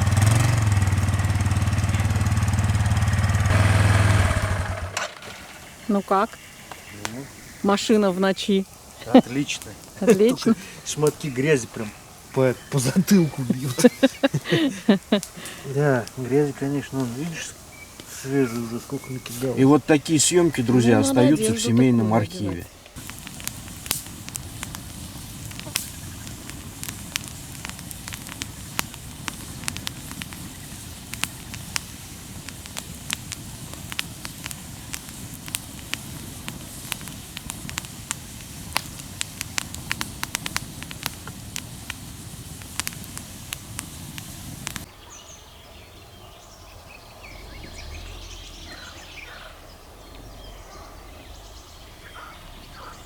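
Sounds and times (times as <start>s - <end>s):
campfire crackling and popping: 0.0s - 45.0s, 47.2s - 53.0s
birds chirping: 0.0s - 53.0s
low rumble: 47.0s - 53.0s.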